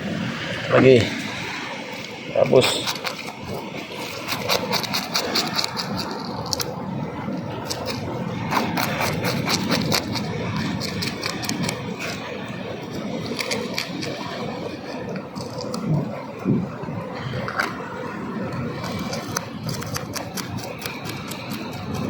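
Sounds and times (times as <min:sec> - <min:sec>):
steady rushing noise: 0:00.0 - 0:22.0.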